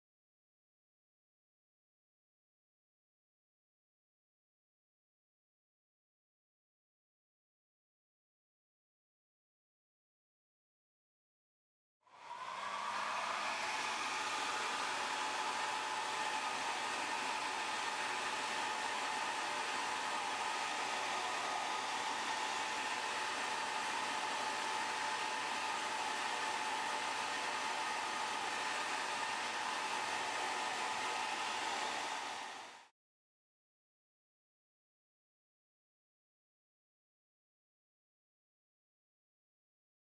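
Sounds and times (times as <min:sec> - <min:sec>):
heat gun blowing air: 0:12.2 - 0:32.9.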